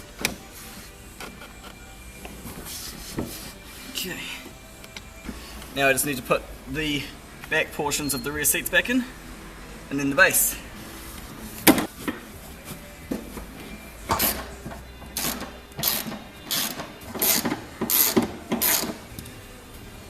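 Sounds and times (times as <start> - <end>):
ratchet clicking: 14.1 - 14.5, 15.2 - 19.0.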